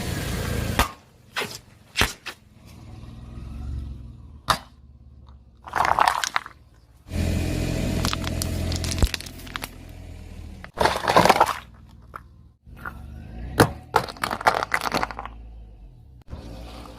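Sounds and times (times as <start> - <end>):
tyre crushing brittle objects: 5.6 - 6.9, 7.9 - 10.0, 10.6 - 12.3, 13.6 - 15.5
low steady rumble: 6.4 - 16.9.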